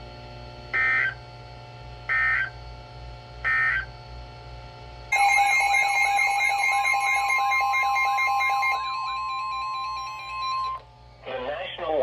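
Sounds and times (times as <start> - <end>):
steady two-tone alarm: 0.8 - 1.2, 2.1 - 2.6, 3.5 - 3.9, 5.1 - 10.9.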